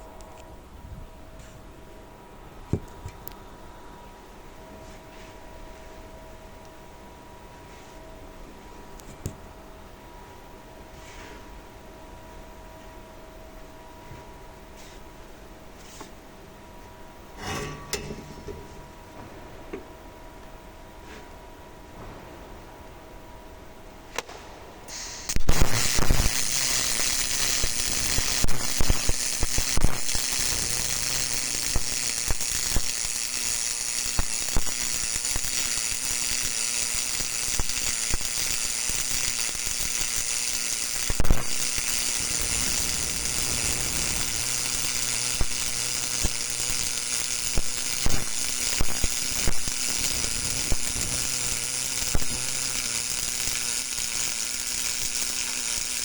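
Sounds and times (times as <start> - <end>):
welding arc crackling hiss: 17.4 - 19.2, 24.1 - 56.0
spatter pops: 24.1 - 56.0.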